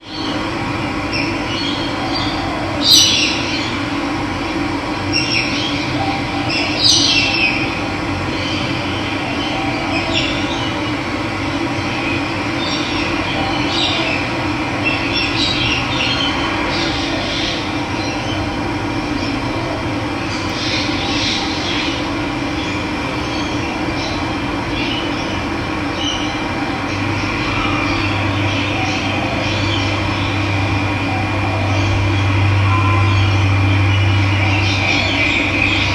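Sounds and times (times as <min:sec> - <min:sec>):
birds chirping: 0:20.2 - 0:35.9.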